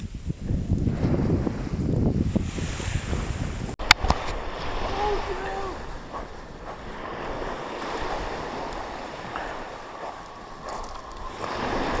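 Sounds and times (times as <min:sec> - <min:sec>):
wind buffeting microphone: 0:00.0 - 0:12.0
surf washing onto beach: 0:02.4 - 0:12.0.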